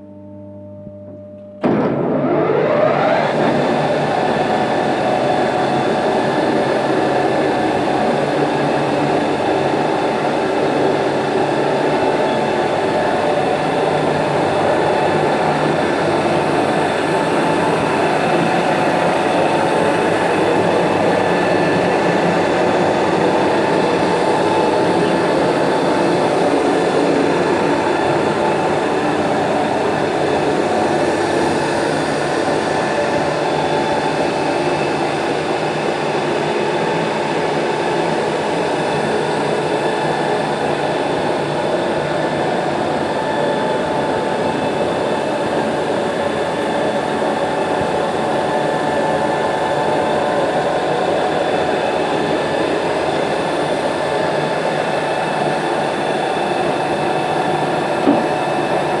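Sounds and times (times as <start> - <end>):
machine whining tones: 0.5 - 36.6
milling machine running: 1.1 - 34.4.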